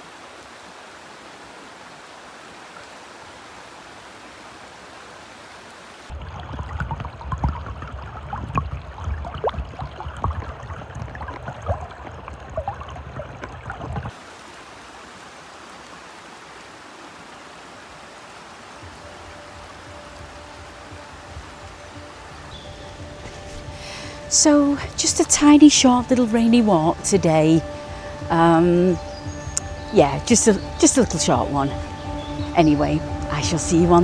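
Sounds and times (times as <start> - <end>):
river water rushing: 0.0 - 6.2, 14.1 - 25.6
water splashing and gurgling: 0.0 - 22.5.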